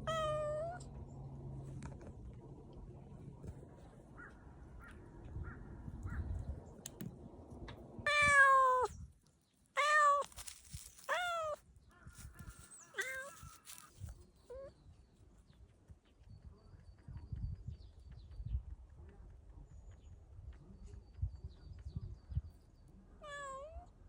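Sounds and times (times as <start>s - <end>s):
cat meowing: 0.0s - 0.8s, 8.1s - 8.9s, 9.8s - 10.4s, 11.1s - 11.6s, 12.9s - 13.6s, 23.2s - 23.9s.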